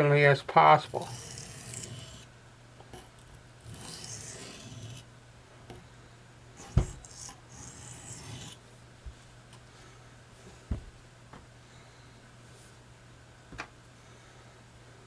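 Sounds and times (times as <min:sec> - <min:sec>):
knife sharpening on oilstone: 0:00.9 - 0:02.2, 0:03.7 - 0:05.0, 0:06.6 - 0:08.6.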